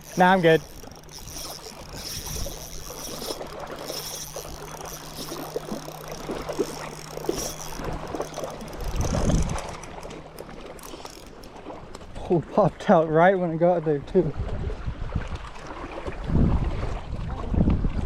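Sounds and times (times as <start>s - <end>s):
wind buffeting microphone: 0.0s - 10.2s, 14.2s - 18.0s
steady low hum: 0.0s - 12.5s.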